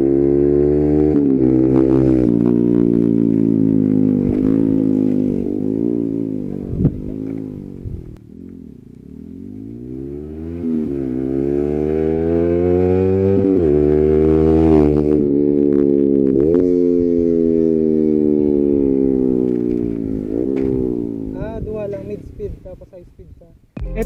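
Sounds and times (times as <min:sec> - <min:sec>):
motorcycle engine running: 0:00.0 - 0:22.1.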